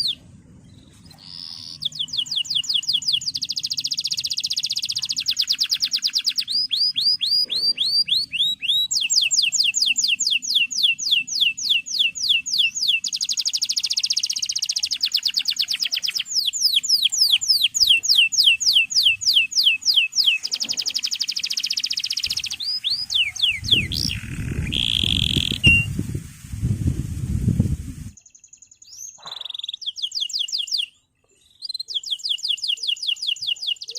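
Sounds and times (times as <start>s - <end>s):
canary singing trills: 0.0s - 26.0s, 28.1s - 33.9s
low rumbling noise: 0.1s - 1.1s.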